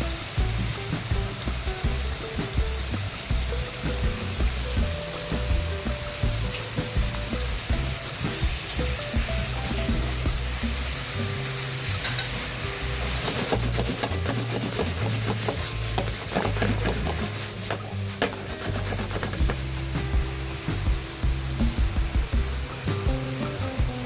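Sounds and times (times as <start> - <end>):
food sizzling in a pan: 0.0 - 24.0
utensil scraping a pan: 11.9 - 19.8.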